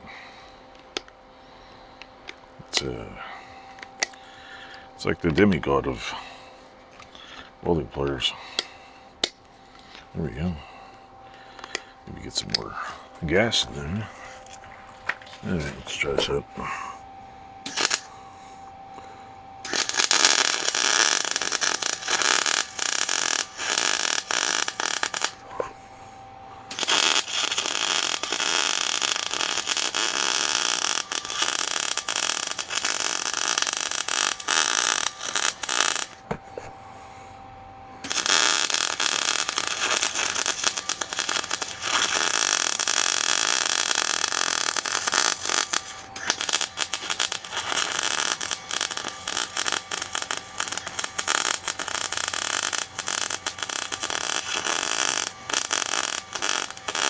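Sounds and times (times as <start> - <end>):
welding arc crackling: 17.7 - 18.1, 19.6 - 25.8, 26.7 - 36.8, 38.0 - 57.0.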